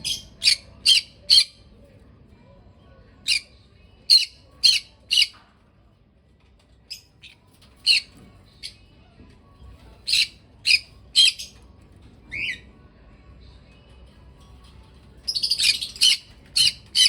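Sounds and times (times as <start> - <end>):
parrot squawking: 0.0 - 1.6, 4.1 - 5.4, 10.0 - 11.6, 15.4 - 17.0.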